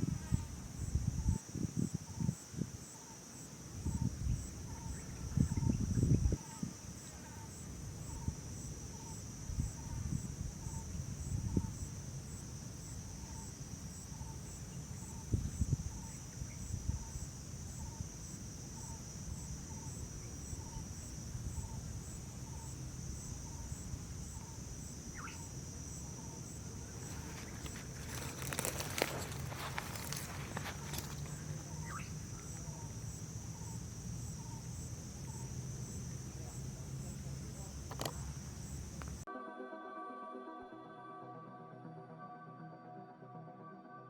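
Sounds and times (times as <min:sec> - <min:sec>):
pulsing insect chorus: 0:00.0 - 0:39.3
rustling and crackling: 0:26.9 - 0:32.0.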